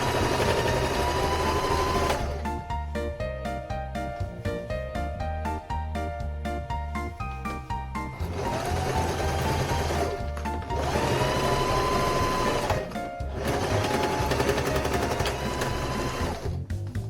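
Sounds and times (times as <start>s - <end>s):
sewing machine motor whine: 0.0s - 2.4s, 8.3s - 16.5s
background music: 0.0s - 17.0s.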